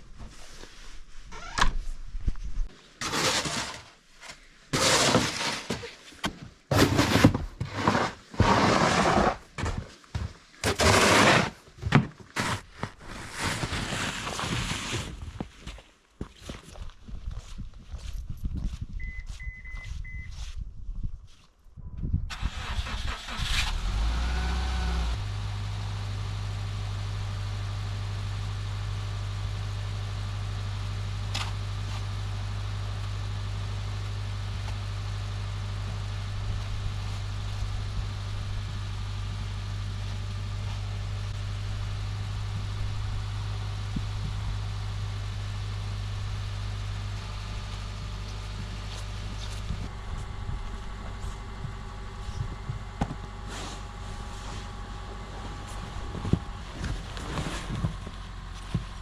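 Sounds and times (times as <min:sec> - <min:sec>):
short high beep: 0:19.0 - 0:20.4
car engine starting and idling: 0:22.3 - 0:59.0.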